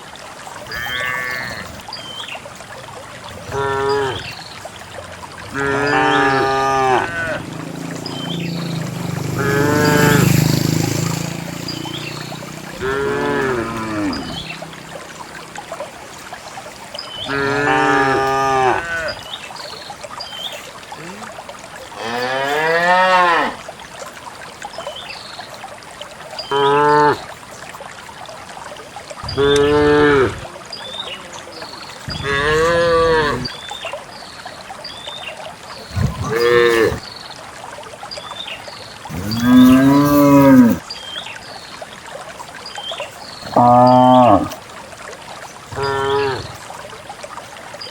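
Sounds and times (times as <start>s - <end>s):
cows mooing: 0.7s - 1.7s, 3.4s - 4.3s, 5.5s - 14.8s, 17.2s - 19.2s, 22.0s - 23.6s, 29.3s - 30.4s, 32.1s - 33.5s, 35.9s - 37.0s, 39.1s - 40.8s, 43.5s - 44.6s, 45.7s - 46.6s.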